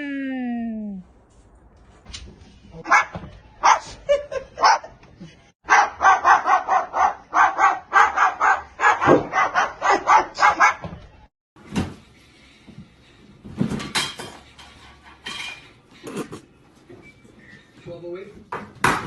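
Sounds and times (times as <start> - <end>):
dog barking rapidly: 2.8 - 4.0, 5.7 - 10.8.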